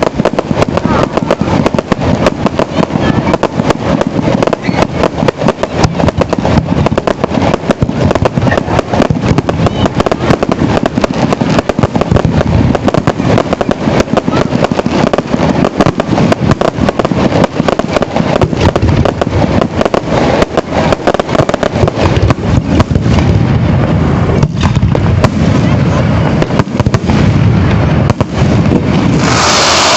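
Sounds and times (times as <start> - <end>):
fireworks bangs and crackles: 0.0 - 29.9.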